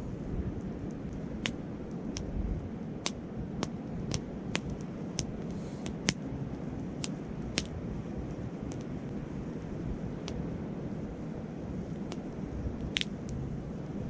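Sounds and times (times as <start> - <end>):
wind: 0.0 - 14.0
campfire crackling and popping: 0.6 - 9.2, 11.9 - 13.4.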